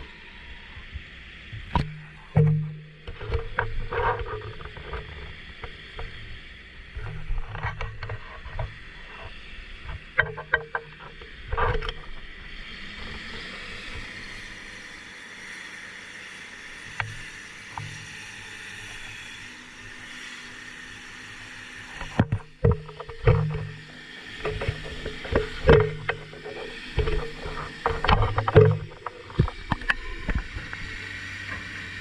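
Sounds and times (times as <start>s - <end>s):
excavator engine running: 21.8s - 32.0s
excavator knocks and clunks: 22.0s - 31.7s.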